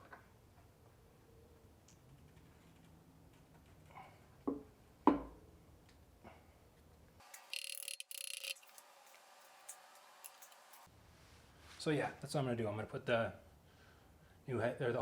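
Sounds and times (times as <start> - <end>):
sharp metallic clicks of tools: 7.2 - 10.9.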